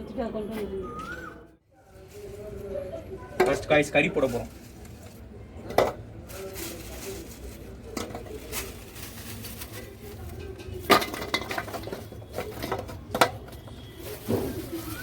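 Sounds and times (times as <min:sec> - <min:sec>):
dishes and utensils clinking: 0:10.3 - 0:14.6.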